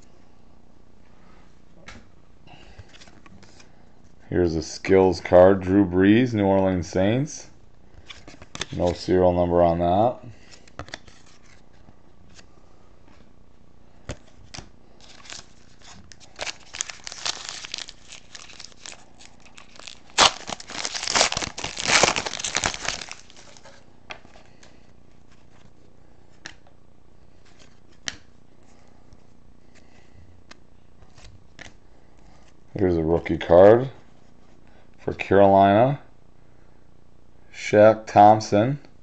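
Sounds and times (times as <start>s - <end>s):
wrapper tearing and crinkling: 15.0s - 23.8s.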